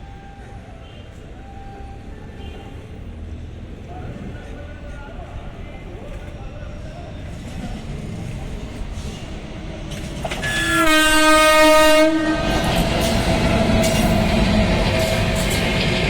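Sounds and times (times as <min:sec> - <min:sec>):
train running and wheel clatter: 0:00.0 - 0:16.0
locomotive horn: 0:10.4 - 0:15.5.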